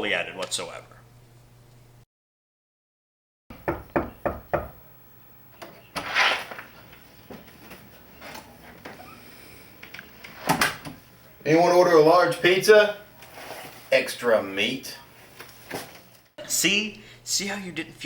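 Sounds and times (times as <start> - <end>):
knocks on a door: 3.5 - 4.8
rustling scrape: 6.0 - 6.8, 13.2 - 14.1.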